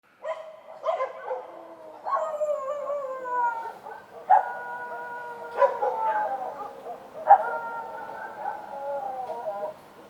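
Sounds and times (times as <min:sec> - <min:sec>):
dog barks: 0:00.2 - 0:01.5, 0:03.8 - 0:04.6, 0:05.5 - 0:08.7
dogs howling: 0:00.8 - 0:09.8.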